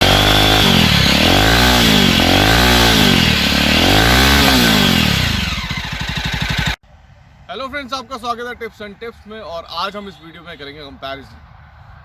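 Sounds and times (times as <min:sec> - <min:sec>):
motorcycle engine revving: 0:00.0 - 0:06.8.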